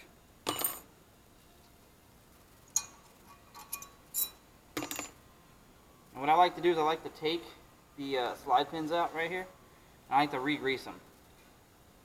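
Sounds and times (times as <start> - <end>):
metal brake clips clinking: 2.7 - 5.2.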